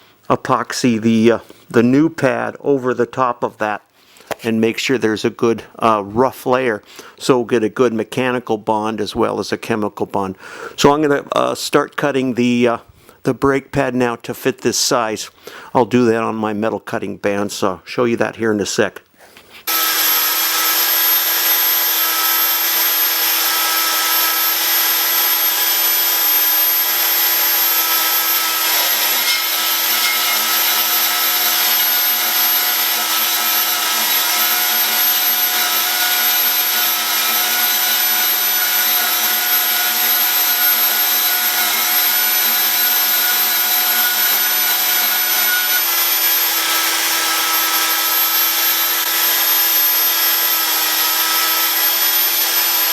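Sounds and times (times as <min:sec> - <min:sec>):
bandsaw cutting metal: 0:19.6 - 0:52.9.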